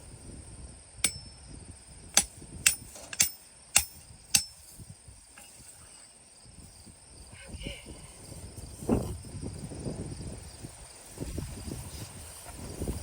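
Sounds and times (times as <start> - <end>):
hammer striking post: 2.1 - 4.6.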